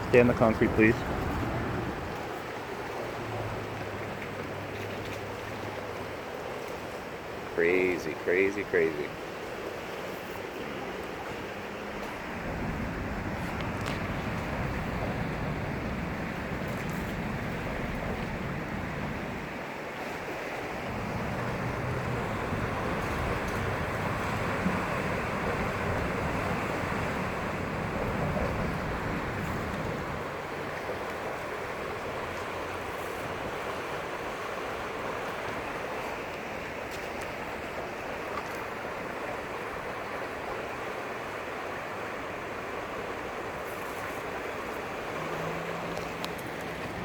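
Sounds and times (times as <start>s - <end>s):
wind buffeting microphone: 0.0s - 2.4s, 12.1s - 19.6s, 20.8s - 31.0s
river floodwater rushing: 0.0s - 47.0s.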